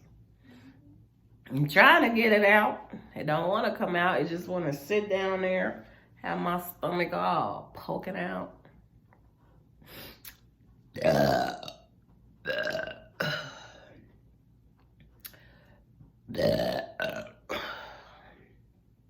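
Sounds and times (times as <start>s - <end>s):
woman burping: 11.0s - 14.0s, 16.3s - 18.2s.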